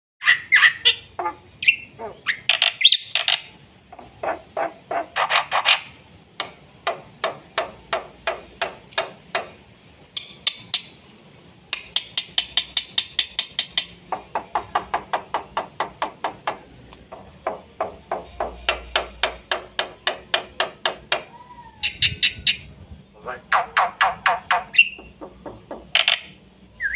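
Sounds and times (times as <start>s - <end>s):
bird harsh rasping call: 0.2s - 6.0s
bird clicking song: 10.1s - 11.0s, 11.7s - 14.3s, 23.8s - 26.9s
bird squeaky notes: 23.5s - 25.2s.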